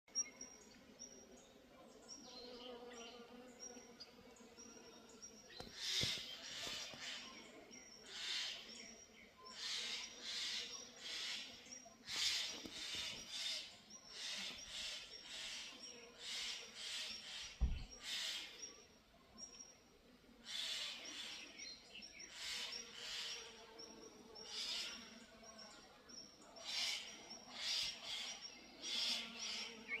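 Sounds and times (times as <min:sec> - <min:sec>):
birds chirping: 0:00.1 - 0:30.0
birds harsh calls: 0:05.6 - 0:08.8
low thumps: 0:17.6 - 0:17.9.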